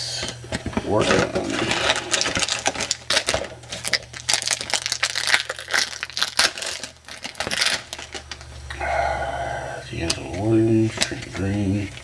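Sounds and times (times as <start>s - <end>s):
trading cards crinkling and flicking: 0.5s - 8.7s.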